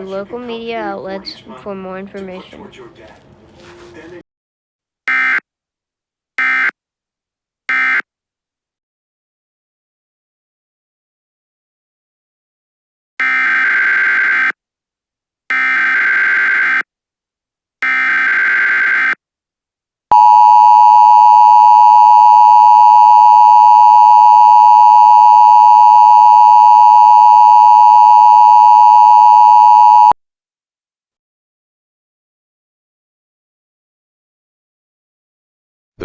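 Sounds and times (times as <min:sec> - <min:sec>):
two-tone attention signal: 0:20.1 - 0:30.2.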